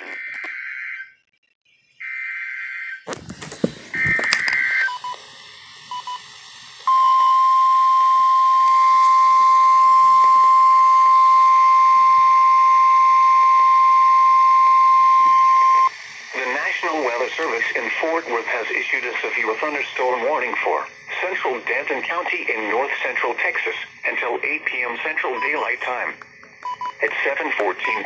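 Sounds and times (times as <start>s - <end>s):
steady single-pitch alarm tone: 5.9s - 22.2s.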